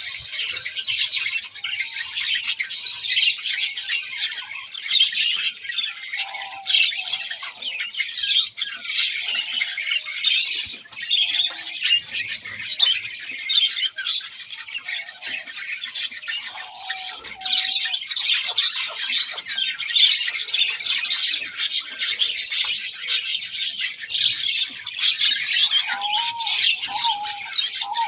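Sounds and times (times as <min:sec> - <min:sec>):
flock of birds chirping: 0:00.0 - 0:28.0
bird squawk: 0:06.0 - 0:10.0, 0:13.8 - 0:28.0.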